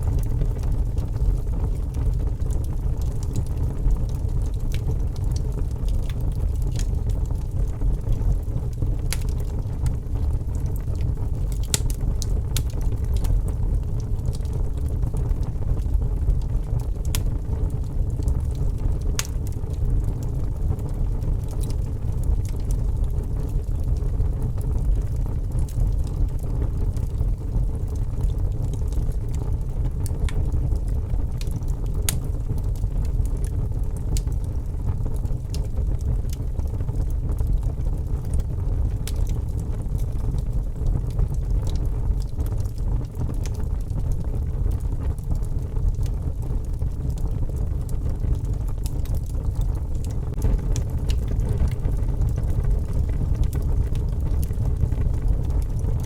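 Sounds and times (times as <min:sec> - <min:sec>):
wood fire crackling and popping: 0:00.0 - 0:56.0
low rumble: 0:46.7 - 0:56.0.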